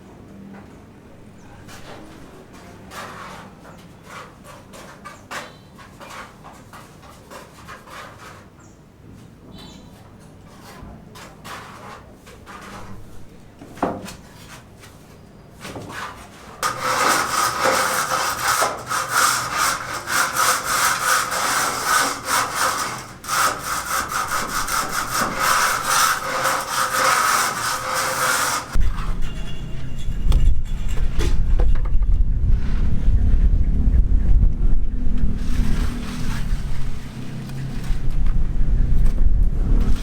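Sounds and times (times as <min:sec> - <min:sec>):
saw cutting wood: 0:16.0 - 0:29.2, 0:35.3 - 0:38.0.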